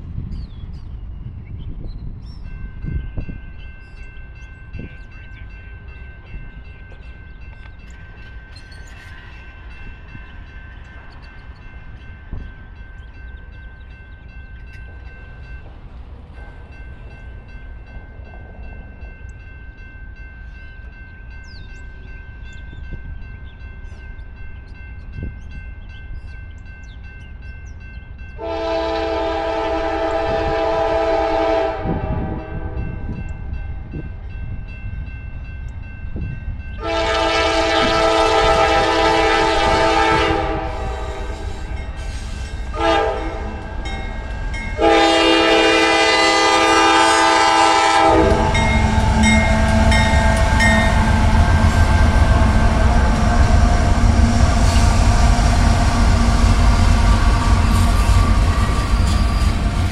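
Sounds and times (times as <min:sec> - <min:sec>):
train rumbling: 0:00.0 - 0:59.9
locomotive air horn blasts: 0:28.4 - 0:33.1, 0:36.8 - 0:43.8, 0:44.8 - 0:53.6.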